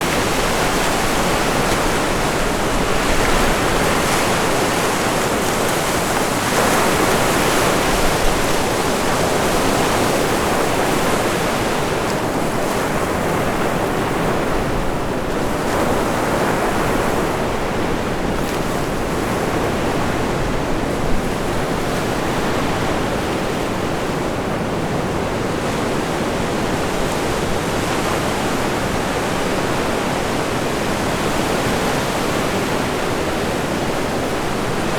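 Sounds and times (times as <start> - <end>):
surf breaking on beach: 0.0 - 34.9
wind gusts on microphone: 0.0 - 34.9.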